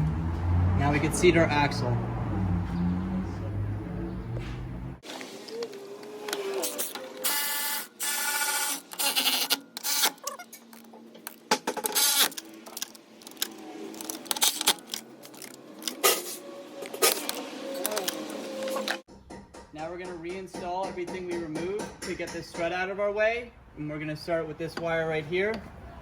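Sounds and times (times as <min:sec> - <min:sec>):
metal knocks and clanks: 0:19.1 - 0:22.8.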